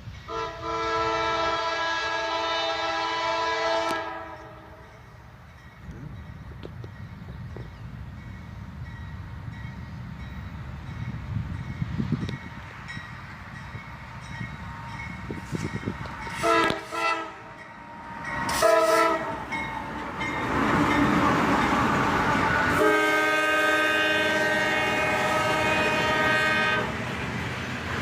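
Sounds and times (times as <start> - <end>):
freight train rumble: 0.0 - 28.0
locomotive air horn: 0.3 - 4.8, 15.5 - 19.6, 22.6 - 27.0.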